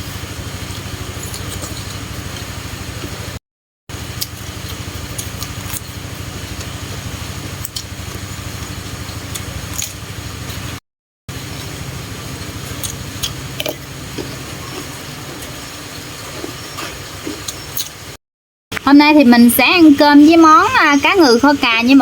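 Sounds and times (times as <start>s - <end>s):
small engine running: 0.0s - 18.0s
sharp clicks and scrapes: 9.3s - 10.6s.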